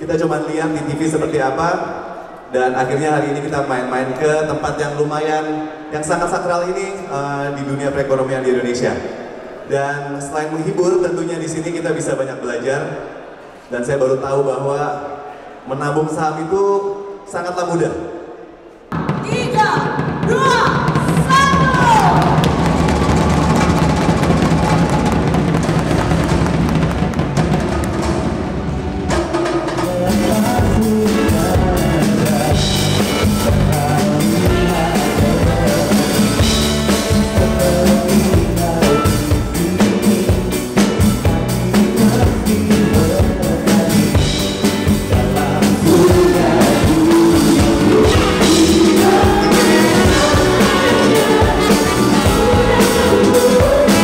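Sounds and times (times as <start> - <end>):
drums: 18.8 - 54.0
live band playing: 18.9 - 54.0.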